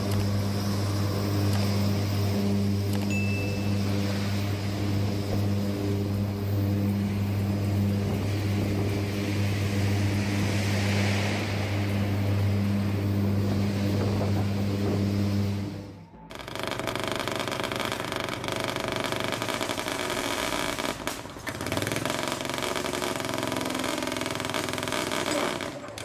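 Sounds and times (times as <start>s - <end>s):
different engine sound: 0.0s - 26.0s
heavy engine droning: 0.0s - 26.0s.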